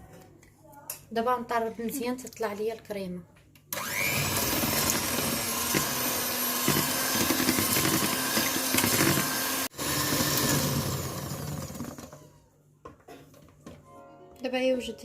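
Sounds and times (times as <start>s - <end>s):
electric mixer running: 3.8s - 12.3s.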